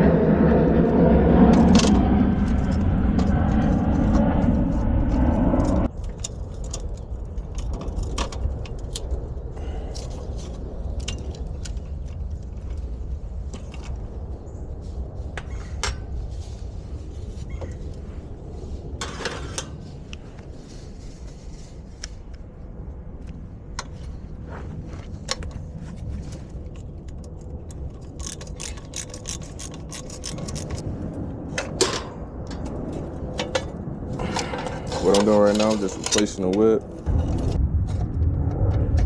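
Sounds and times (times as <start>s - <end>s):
steady low rumble: 0.0s - 39.0s
hand tools clicking and scraping: 19.0s - 20.2s, 23.8s - 30.8s, 31.6s - 36.8s.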